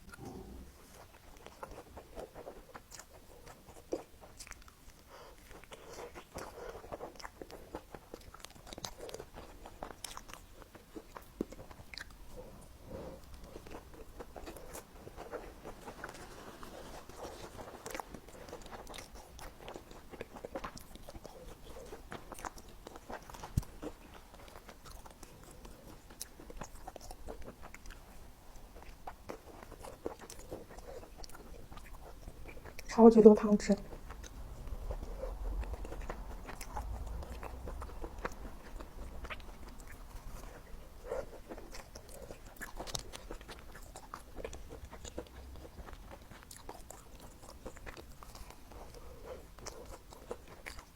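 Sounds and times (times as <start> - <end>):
wet mouth clicks: 0.0 - 0.7
person chewing crunchy food: 0.0 - 50.9.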